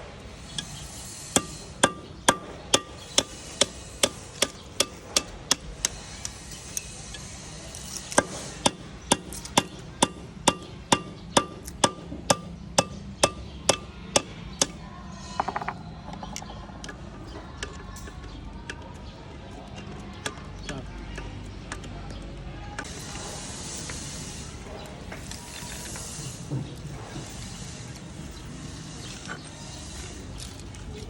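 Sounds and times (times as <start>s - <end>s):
hammer striking metal: 0.4s - 14.8s.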